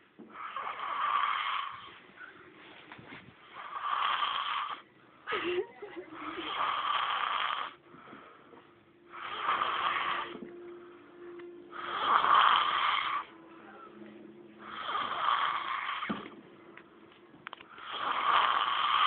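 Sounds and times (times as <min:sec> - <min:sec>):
woman snoring: 0:06.1 - 0:07.8, 0:09.1 - 0:10.4, 0:11.7 - 0:13.4, 0:14.6 - 0:16.2, 0:17.8 - 0:19.0.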